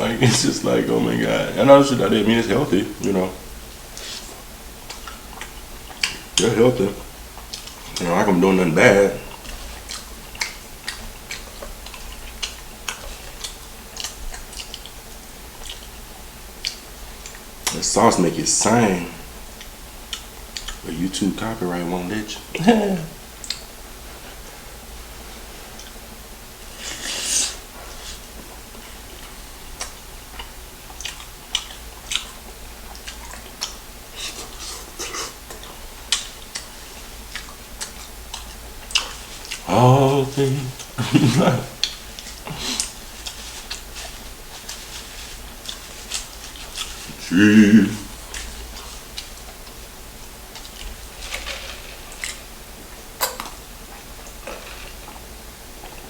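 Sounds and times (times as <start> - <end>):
close chewing mouth smacks: 3.0 - 6.4, 7.4 - 8.0, 9.2 - 16.0, 19.6 - 20.8, 27.9 - 39.6, 40.8 - 44.8.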